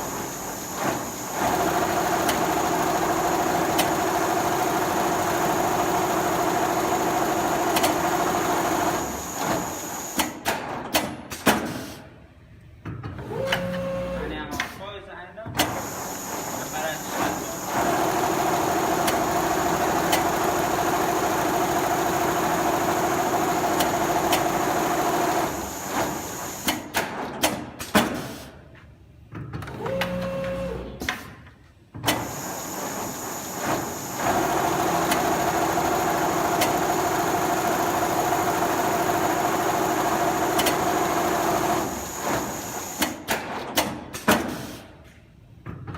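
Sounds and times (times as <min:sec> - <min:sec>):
sewing machine humming: 0:00.0 - 0:10.2, 0:15.9 - 0:26.7, 0:32.3 - 0:43.0.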